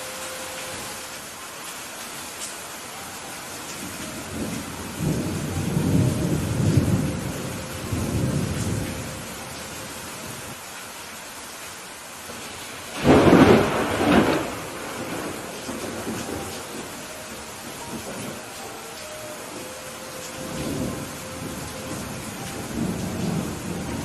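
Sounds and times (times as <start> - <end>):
steady rain falling: 0.0 - 24.0
rolling rumble of thunder: 3.8 - 10.5, 12.3 - 18.6, 19.5 - 24.0
sharp thunderclap: 13.0 - 16.8.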